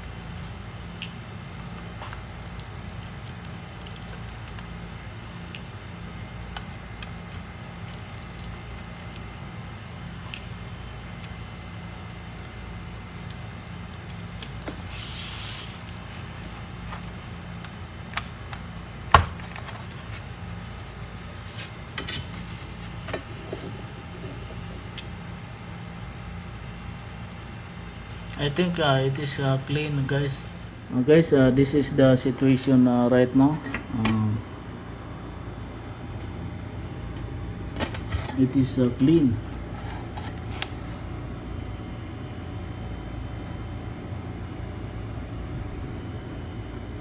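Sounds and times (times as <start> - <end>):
steady low hum: 0.0 - 47.0
tools and parts handled: 37.7 - 38.6, 39.3 - 41.0.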